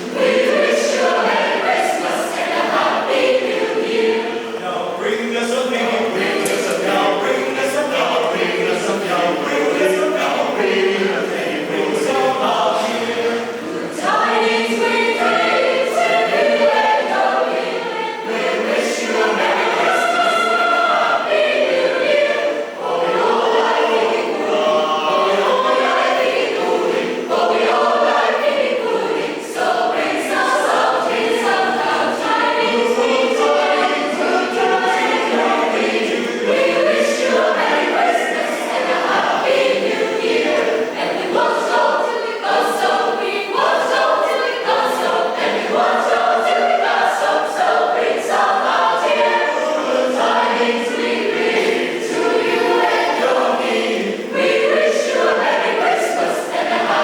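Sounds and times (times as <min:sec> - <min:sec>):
choir singing in harmony: 0:00.0 - 0:57.0.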